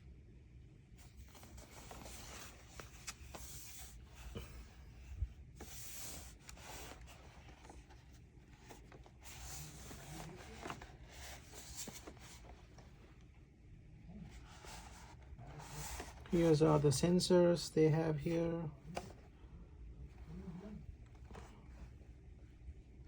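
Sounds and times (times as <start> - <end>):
plastic handling rubbing: 1.0 - 13.2, 14.3 - 17.0, 20.1 - 21.9.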